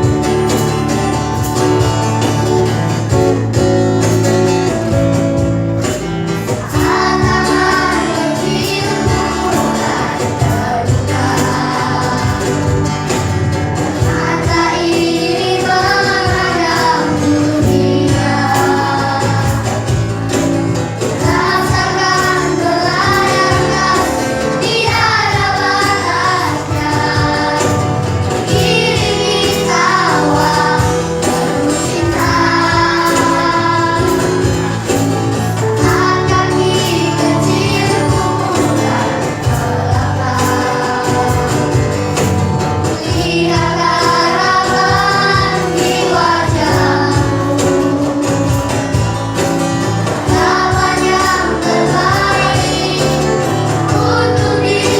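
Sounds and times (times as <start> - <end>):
children singing: 0.0 - 54.9
instrumental accompaniment: 0.0 - 54.9.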